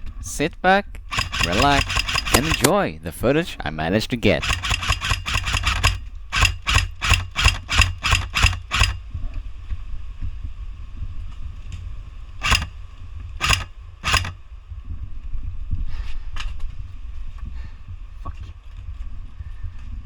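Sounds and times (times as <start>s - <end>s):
airsoft gun shots: 1.1s - 2.8s, 4.4s - 9.0s, 12.4s - 12.7s, 13.4s - 14.4s.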